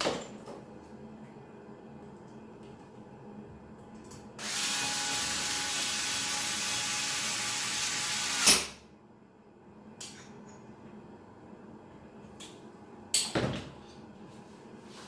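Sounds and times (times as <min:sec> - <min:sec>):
power tool whirring: 0:04.4 - 0:08.6.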